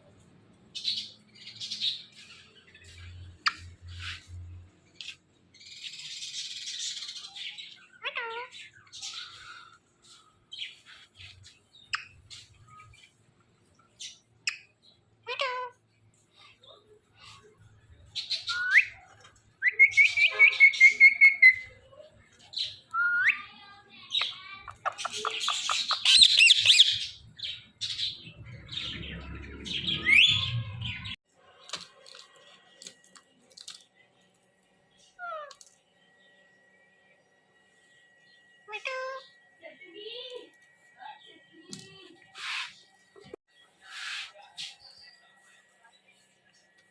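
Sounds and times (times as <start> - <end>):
parakeets chirping and calling: 5.6 - 12.6, 24.1 - 31.2
parakeets squawking: 24.2 - 31.2.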